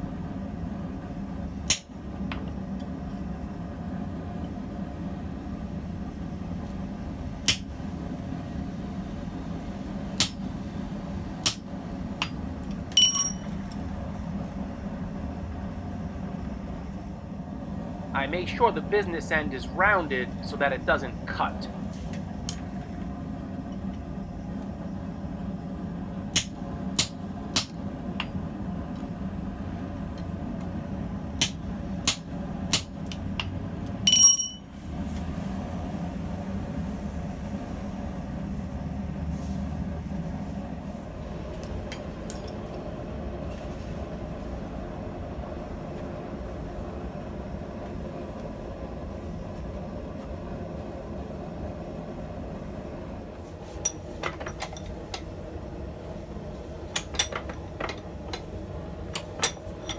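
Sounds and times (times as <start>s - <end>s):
steady low hum: 0.0s - 34.8s
loud ringing metal clang: 13.0s - 13.5s, 34.1s - 34.7s
hammer striking steel anvil: 13.0s - 13.6s, 34.1s - 34.6s.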